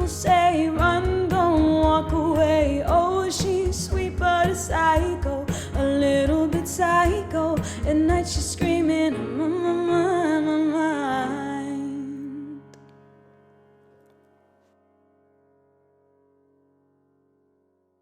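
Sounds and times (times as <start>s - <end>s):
drum beat: 0.0s - 8.8s
person singing: 0.0s - 12.7s
keyboard: 0.0s - 13.1s.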